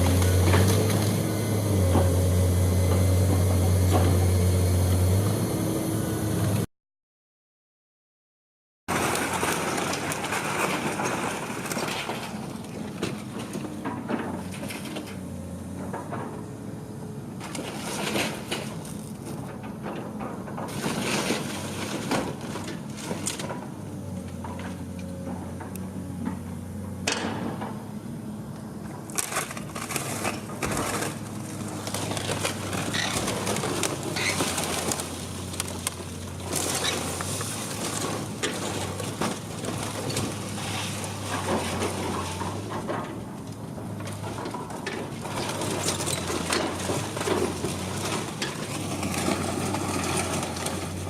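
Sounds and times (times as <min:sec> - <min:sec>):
demolition machine engine humming: 0:00.0 - 0:06.7, 0:08.9 - 0:51.0
timber cracking and crunching: 0:29.0 - 0:43.0.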